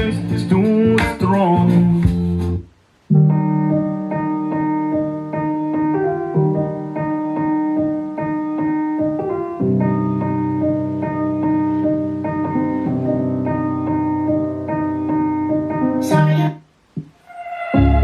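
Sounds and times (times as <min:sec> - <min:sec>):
piano playing repeated chords: 0:00.0 - 0:18.0
song held note: 0:17.2 - 0:18.0.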